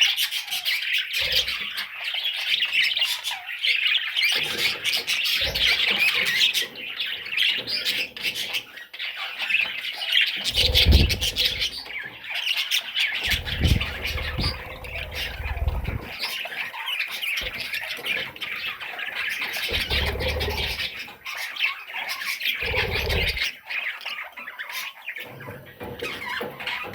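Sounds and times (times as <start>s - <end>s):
baby budgerigars squawking: 0.0s - 26.9s
low rumbling bumps: 10.5s - 11.8s, 13.2s - 16.2s.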